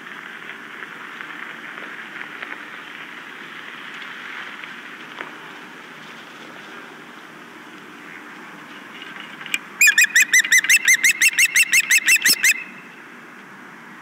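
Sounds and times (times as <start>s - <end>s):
osprey chirping: 9.8s - 13.0s.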